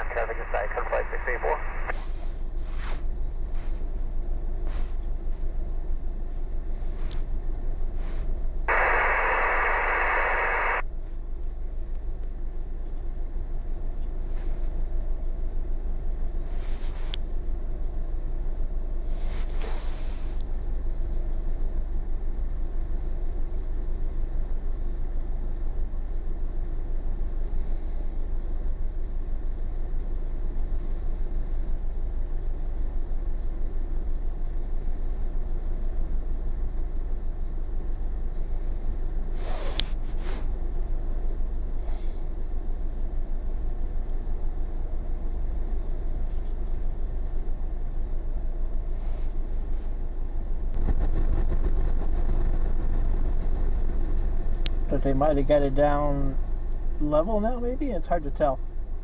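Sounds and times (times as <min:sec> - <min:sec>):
steady low rumble: 0:00.0 - 0:02.0, 0:03.2 - 0:10.8, 0:50.0 - 0:58.0
radio scanner hiss: 0:00.0 - 0:02.5, 0:08.2 - 0:10.8, 0:50.8 - 0:56.4.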